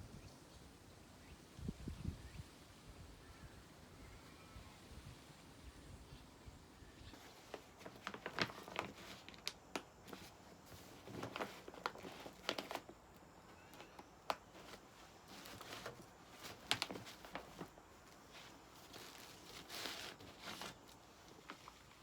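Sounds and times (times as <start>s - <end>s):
crinkling rustles: 7.0s - 22.0s.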